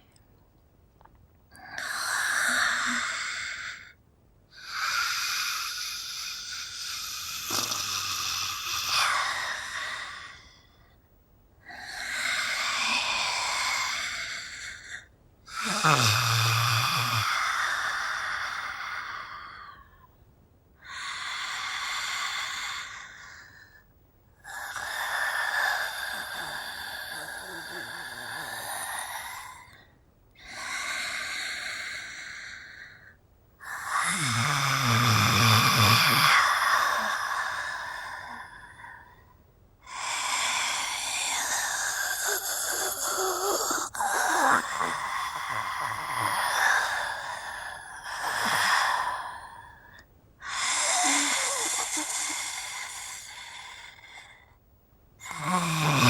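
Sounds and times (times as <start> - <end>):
woman's raspy hissing exhalations: 4.6 - 10.5, 11.8 - 19.8, 24.5 - 29.7, 30.5 - 39.1, 39.9 - 54.5, 55.2 - 56.0
woman's breathy hissing exhales: 39.9 - 54.5
woman's growling moan: 50.5 - 52.6.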